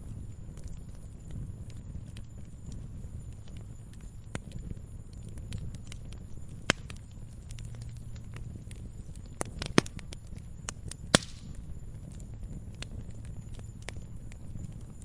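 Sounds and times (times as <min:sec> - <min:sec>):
burning wood popping and snapping: 0:00.0 - 0:15.0
low rumble of flames: 0:00.0 - 0:15.0.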